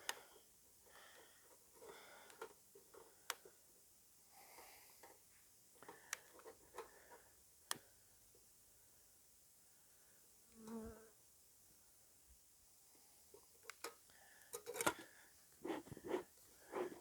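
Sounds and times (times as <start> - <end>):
soft rustling: 15.6 - 17.0.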